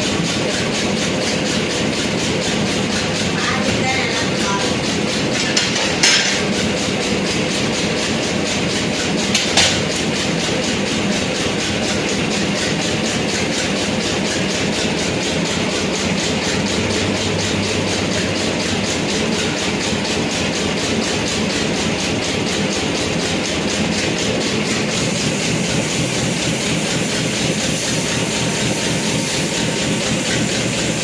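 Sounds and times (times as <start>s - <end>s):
machine rattling: 0.0s - 31.0s
sharp metal knocks: 5.4s - 6.5s, 9.3s - 10.0s.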